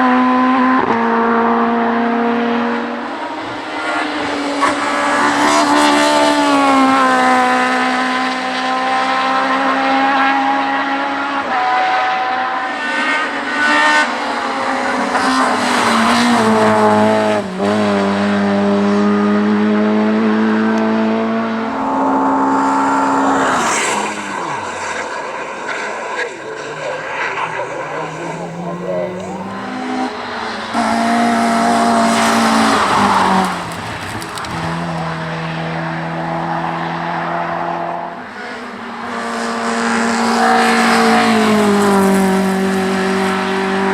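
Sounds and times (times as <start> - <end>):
race car engine at high revs: 0.0 - 43.9.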